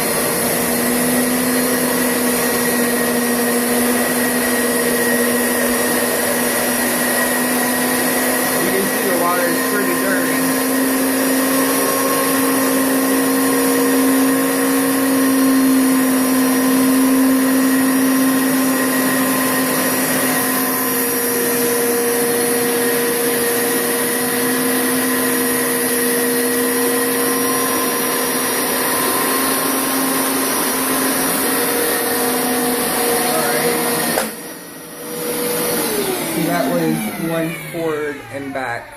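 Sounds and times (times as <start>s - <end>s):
carpet cleaner running: 0.0s - 38.9s.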